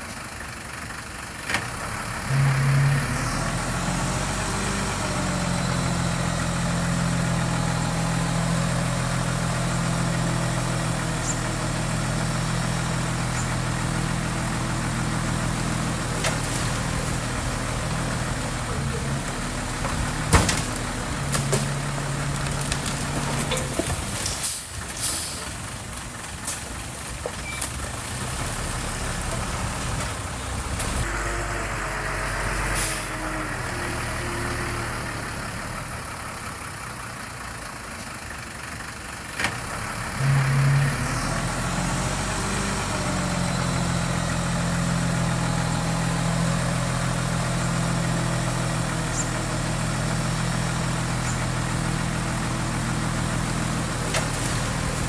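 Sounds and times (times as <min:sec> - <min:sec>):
diesel engine running: 0:00.0 - 0:55.0
knocks and clanks: 0:19.8 - 0:21.8.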